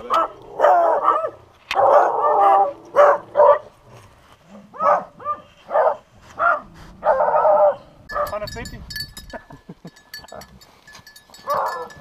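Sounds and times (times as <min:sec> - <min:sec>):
dogs barking and baying: 0:00.0 - 0:08.5, 0:11.3 - 0:12.0.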